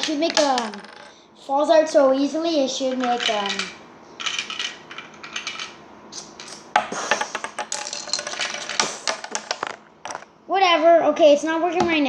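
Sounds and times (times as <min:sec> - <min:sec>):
plastic pieces clicking and rattling: 0:00.0 - 0:01.1, 0:02.8 - 0:06.6, 0:07.2 - 0:10.3.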